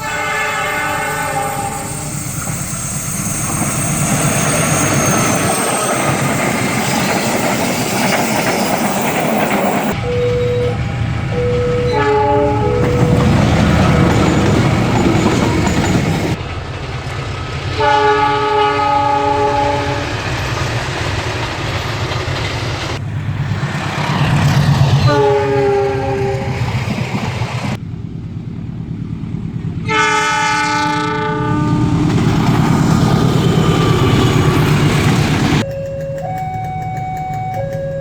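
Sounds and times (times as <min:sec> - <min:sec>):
locomotive air horn blasts: 0:00.0 - 0:02.3, 0:09.9 - 0:16.4, 0:17.8 - 0:20.0, 0:25.0 - 0:26.6, 0:29.9 - 0:32.0
train rumble: 0:00.0 - 0:38.0.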